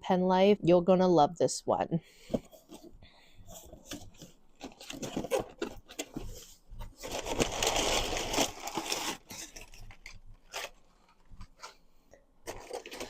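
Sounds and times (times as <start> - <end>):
packaging rustling: 2.4 - 13.0
dense packaging crinkling: 3.5 - 13.0.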